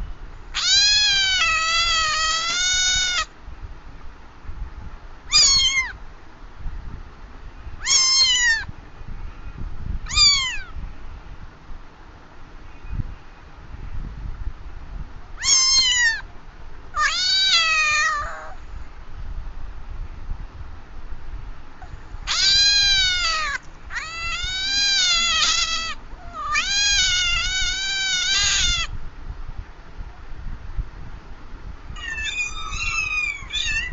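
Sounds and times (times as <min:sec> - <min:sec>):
cat meowing: 0:00.6 - 0:03.3, 0:05.3 - 0:06.0, 0:07.8 - 0:08.7, 0:10.1 - 0:10.7, 0:15.4 - 0:16.2, 0:17.0 - 0:18.6, 0:21.8 - 0:28.9, 0:32.0 - 0:33.9.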